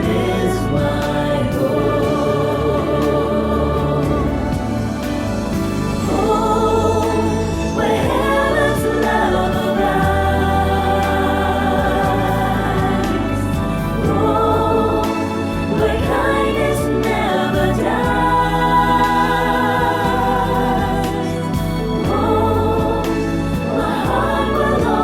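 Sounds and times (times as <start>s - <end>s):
choir singing a worship song: 0.0s - 25.0s
instrumental accompaniment: 0.0s - 25.0s.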